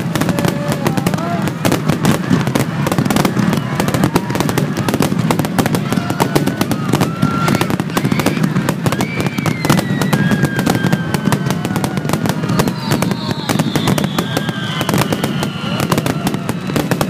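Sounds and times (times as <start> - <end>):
firework whistles: 0.0 - 17.0
fireworks bursts and crackles: 0.0 - 17.0.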